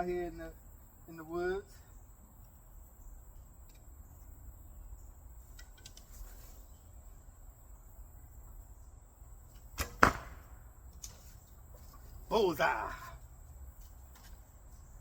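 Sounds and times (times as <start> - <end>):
arrow striking target: 9.6 - 11.2.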